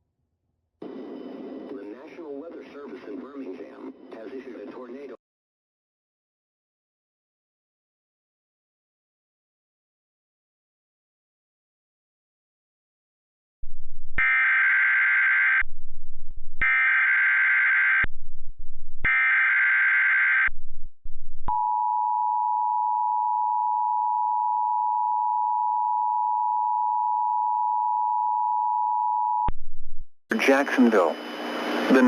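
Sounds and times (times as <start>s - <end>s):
two-tone alarm: 14.2s - 15.8s, 16.6s - 18.2s, 19.0s - 20.6s.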